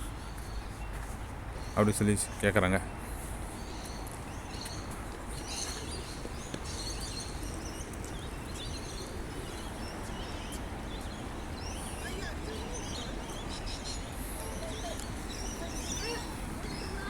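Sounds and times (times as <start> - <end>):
small birds chirping: 0.0 - 17.0.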